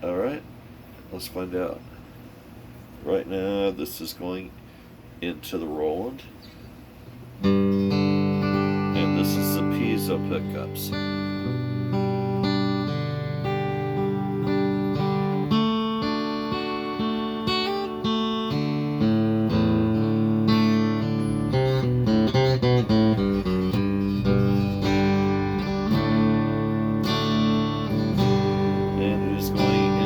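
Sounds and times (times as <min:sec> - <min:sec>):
clean electric guitar: 0:07.4 - 0:30.0.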